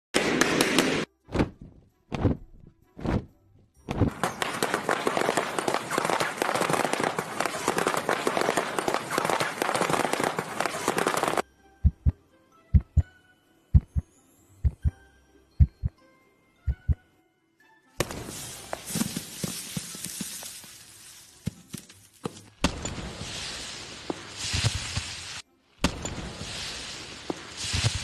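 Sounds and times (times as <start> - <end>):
heartbeat-like low thuds: 11.8 - 13.1, 13.8 - 14.0, 14.6 - 15.0, 15.6 - 15.9, 16.7 - 17.0.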